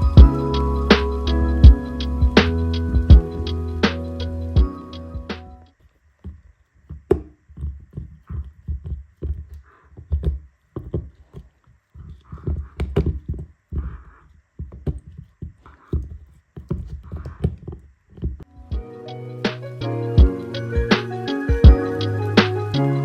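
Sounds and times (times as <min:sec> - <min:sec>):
soft low thumps and knocks: 0:00.0 - 0:00.4, 0:01.6 - 0:03.4.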